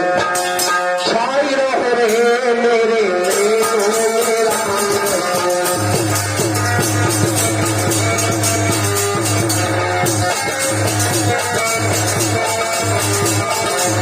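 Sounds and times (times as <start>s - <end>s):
fast drum strokes: 3.3s - 14.0s.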